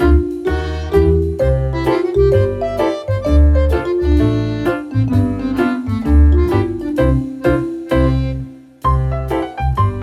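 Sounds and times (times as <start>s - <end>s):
upbeat piano instrumental with bass: 0.0s - 10.0s.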